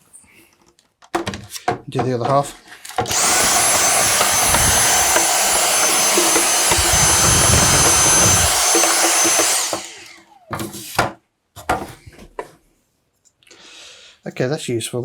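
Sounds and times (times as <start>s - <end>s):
vacuum cleaner whining: 2.9s - 11.0s.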